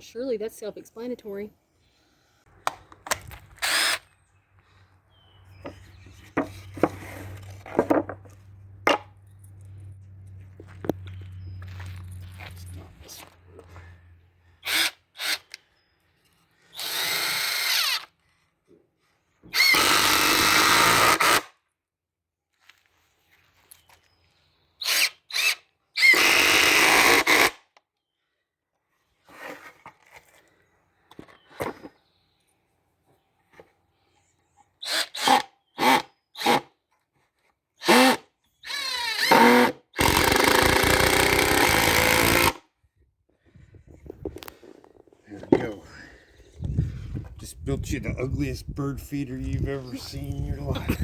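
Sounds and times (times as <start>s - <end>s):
cordless power tool motor: 3.1s - 4.1s, 14.6s - 15.6s, 16.6s - 18.1s, 19.5s - 21.5s, 24.8s - 27.6s, 34.8s - 36.7s, 37.8s - 42.6s.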